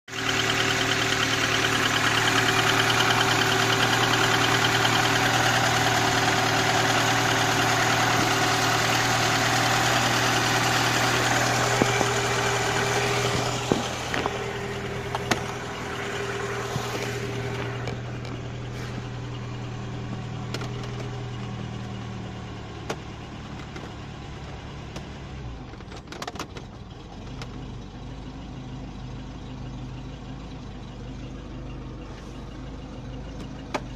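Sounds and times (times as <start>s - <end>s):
engine running with knock: 0.1s - 22.2s, 33.2s - 33.9s.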